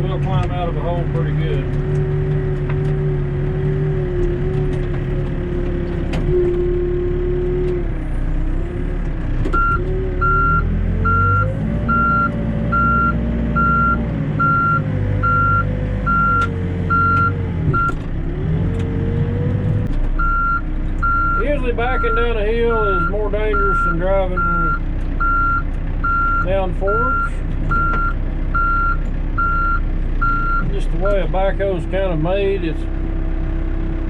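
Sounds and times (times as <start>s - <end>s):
backhoe diesel engine under load: 0.0s - 34.0s
reverse alarm beeping: 9.6s - 17.9s, 23.0s - 30.6s.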